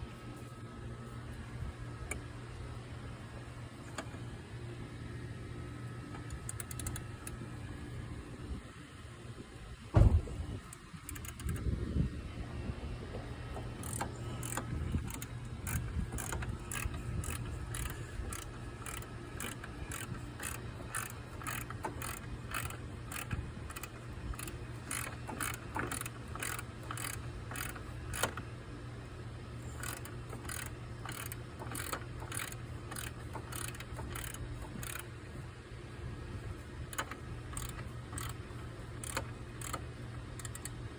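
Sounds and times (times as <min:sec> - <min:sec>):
socket ratchet wrench clicking: 0:06.2 - 0:07.4, 0:10.7 - 0:11.6, 0:13.6 - 0:28.4, 0:29.7 - 0:35.1, 0:36.9 - 0:38.4, 0:39.0 - 0:40.8.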